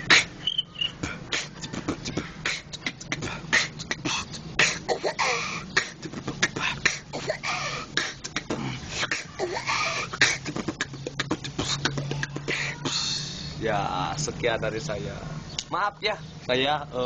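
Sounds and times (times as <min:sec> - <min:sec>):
person beatboxing: 0:00.0 - 0:13.6.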